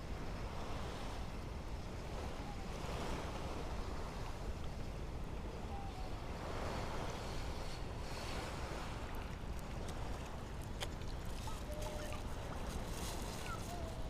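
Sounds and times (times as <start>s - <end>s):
sea waves washing on shore: 0.0s - 14.0s.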